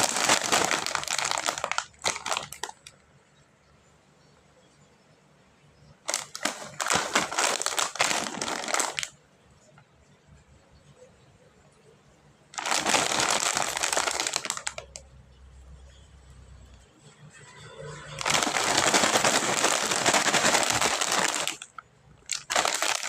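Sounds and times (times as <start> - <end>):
plastic snack wrapper crinkling: 0.0 - 3.0, 6.1 - 9.2, 12.6 - 15.0, 18.2 - 23.0.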